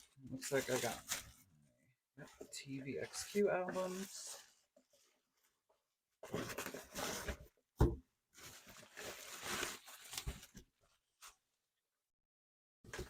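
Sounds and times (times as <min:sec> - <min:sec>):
album packaging rustling: 0:00.0 - 0:01.5, 0:02.3 - 0:05.5, 0:08.4 - 0:11.4.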